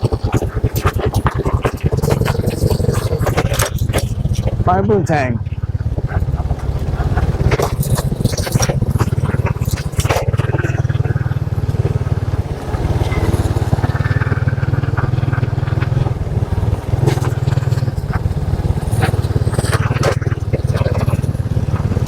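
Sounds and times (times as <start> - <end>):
motorcycle engine droning: 0.0 - 22.0
clicks and rattles: 5.4 - 12.0.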